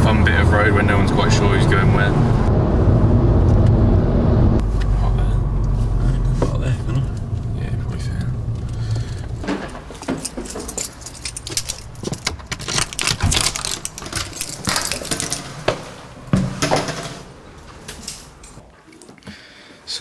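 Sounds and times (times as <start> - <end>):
low vehicle rumble: 0.0 - 18.6
small metal objects jangling: 9.7 - 15.7.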